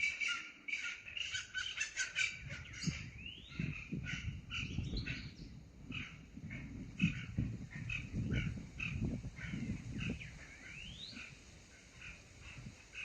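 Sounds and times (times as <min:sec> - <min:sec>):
birds calling and chirping: 0:00.0 - 0:13.0.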